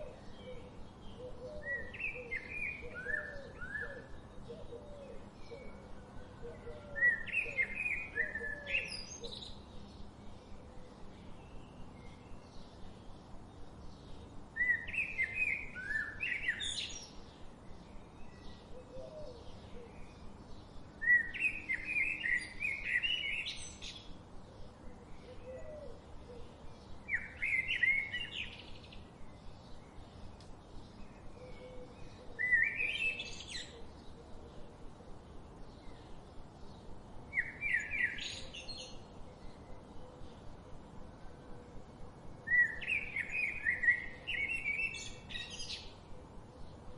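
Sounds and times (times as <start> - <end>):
faint bird calls: 0.0 - 9.6, 31.2 - 34.9
forest ambience hiss: 0.0 - 46.9.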